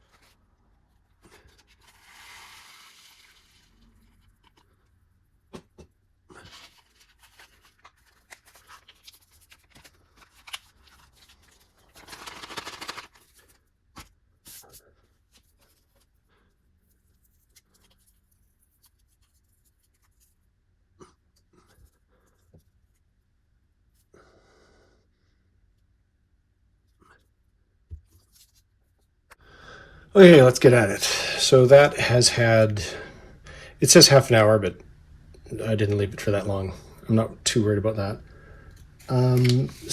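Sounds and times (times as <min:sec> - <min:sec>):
plastic packaging rustling: 0:06.4 - 0:13.6, 0:38.8 - 0:39.9.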